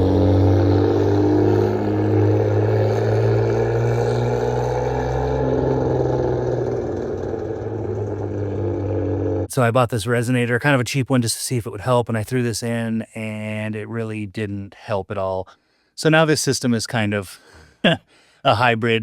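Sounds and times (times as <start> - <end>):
car engine idling with exhaust drone: 0.0 - 9.5.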